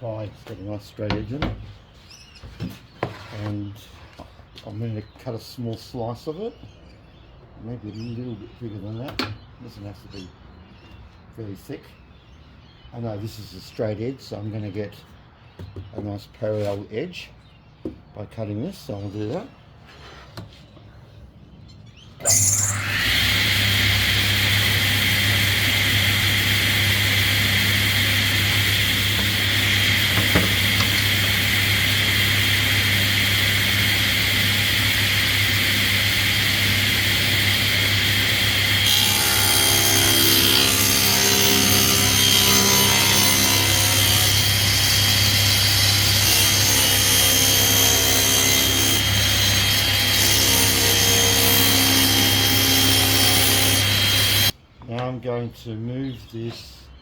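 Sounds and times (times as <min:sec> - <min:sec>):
table saw cutting plywood: 0:22.2 - 0:54.5.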